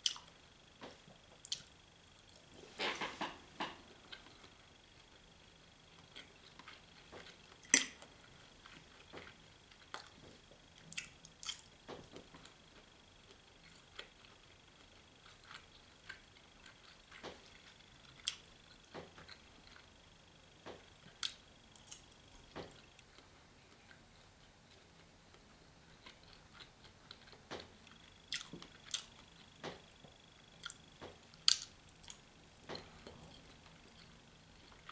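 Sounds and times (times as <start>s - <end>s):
chewing mouth clicks and smacks: 10.8s - 11.7s.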